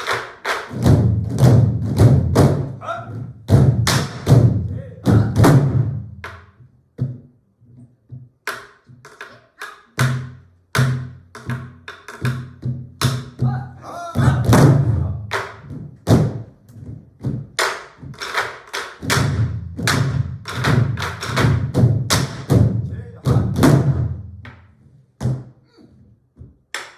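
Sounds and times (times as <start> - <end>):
barrel drums thudding: 0.8 - 6.2.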